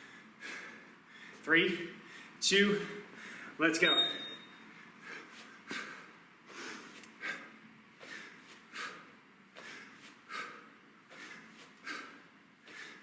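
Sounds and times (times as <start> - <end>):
man breathing forcefully: 0.0 - 3.6, 4.7 - 13.0.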